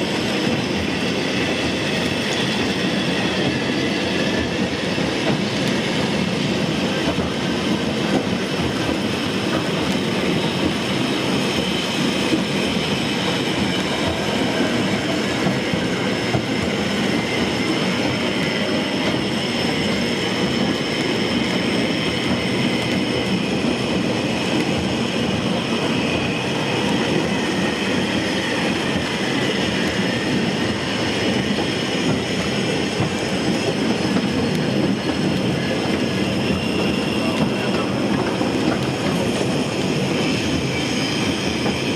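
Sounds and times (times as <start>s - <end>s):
train wheels rumbling on rail: 0.0s - 41.9s
high wheel squeal: 9.1s - 32.9s, 35.1s - 41.9s.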